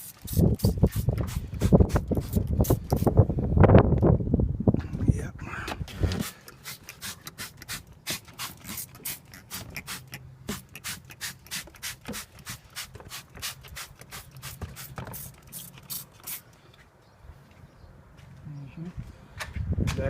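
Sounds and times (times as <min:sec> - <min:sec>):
spray bottle hissing spurts: 0:00.0 - 0:03.1, 0:06.2 - 0:16.5.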